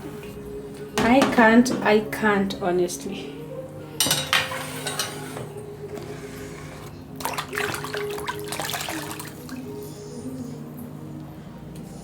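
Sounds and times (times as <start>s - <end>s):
water running and splashing: 7.2s - 9.8s.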